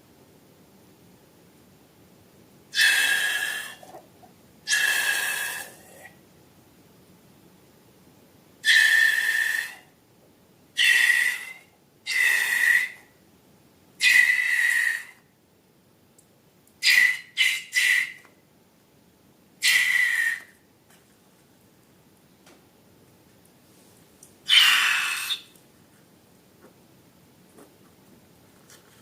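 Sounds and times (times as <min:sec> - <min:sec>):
air squealing out of balloon: 0:02.7 - 0:04.0, 0:04.7 - 0:05.8, 0:08.6 - 0:09.9, 0:10.8 - 0:13.1, 0:14.0 - 0:15.2, 0:16.8 - 0:18.2, 0:19.6 - 0:20.5, 0:24.5 - 0:25.5.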